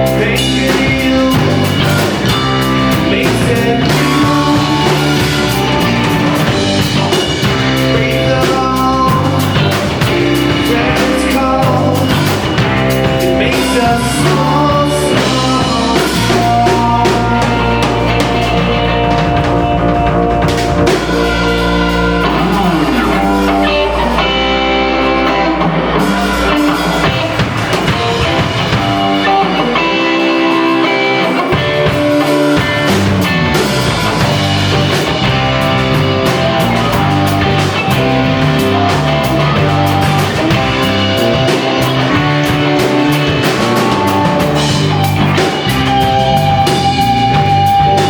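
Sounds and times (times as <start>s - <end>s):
live rock band playing: 0.0s - 48.0s.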